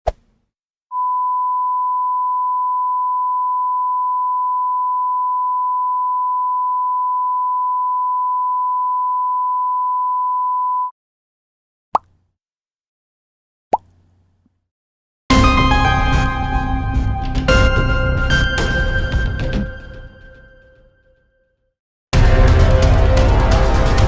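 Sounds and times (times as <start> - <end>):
steady electronic beep tone: 0.9 - 10.9.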